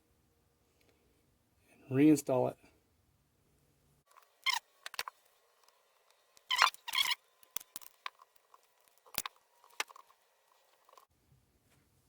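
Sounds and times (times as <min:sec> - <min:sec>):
small metal clicks and scrapes: 0:04.1 - 0:11.1.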